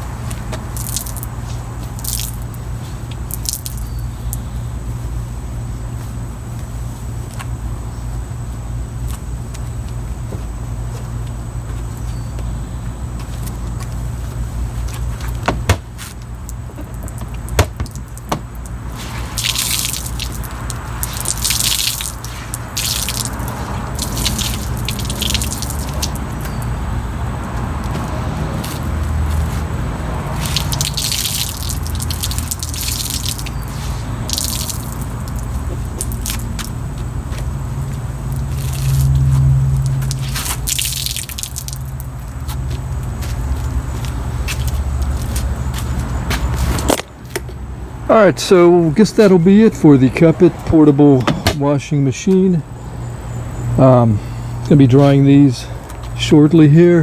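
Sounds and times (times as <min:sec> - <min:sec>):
steady low hum: 0:00.0 - 0:57.0
water splashing and dripping: 0:00.6 - 0:04.4, 0:16.3 - 0:43.8.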